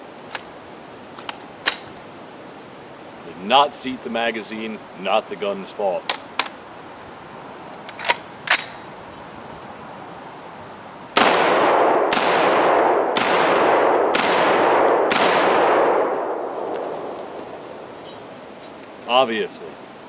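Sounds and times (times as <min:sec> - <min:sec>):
rifle shots with long echo: 0:11.2 - 0:18.0.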